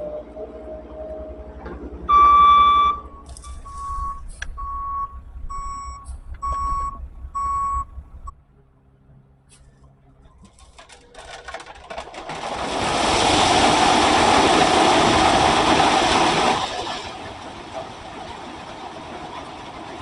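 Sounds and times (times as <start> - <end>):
heavy machine engine rumble: 0.0 - 20.0
backup alarm beeping: 2.1 - 8.3.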